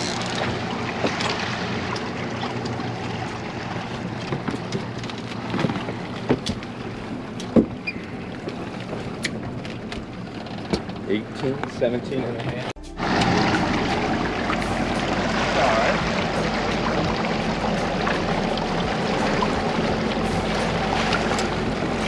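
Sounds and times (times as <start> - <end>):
boat motor running: 0.0 - 22.0
water: 0.0 - 22.0
wind noise: 12.6 - 22.0.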